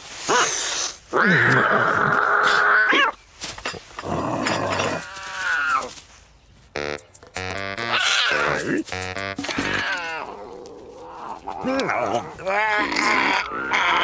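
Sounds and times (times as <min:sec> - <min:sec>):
cartoon animal cries: 0:07.8 - 0:08.8, 0:09.4 - 0:10.4, 0:12.4 - 0:14.0.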